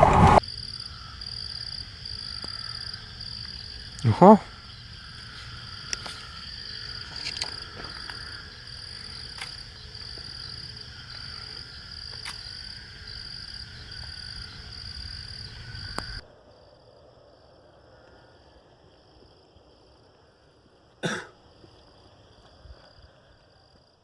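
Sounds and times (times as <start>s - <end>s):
low rumble: 0.0s - 0.4s
frogs calling: 0.4s - 16.2s.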